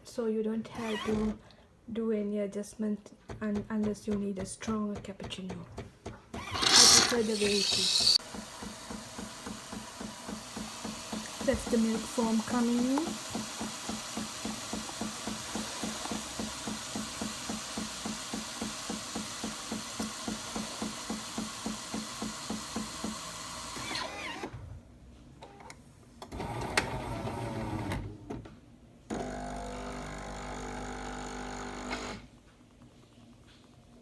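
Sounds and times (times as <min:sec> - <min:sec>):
coffee machine hum: 0:06.5 - 0:24.0, 0:29.2 - 0:32.2
pulsing milk frothing hiss: 0:06.6 - 0:21.1.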